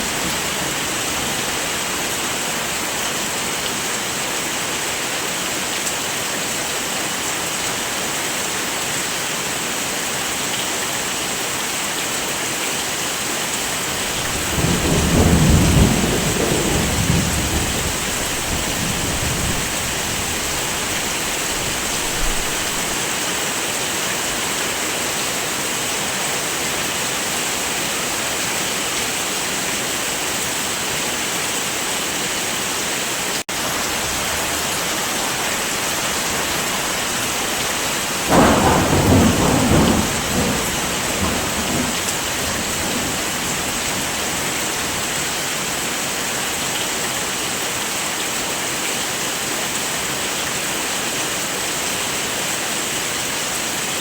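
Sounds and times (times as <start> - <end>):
heavy rain hissing: 0.0 - 54.0
thunder rumble: 13.8 - 23.0, 33.7 - 44.4.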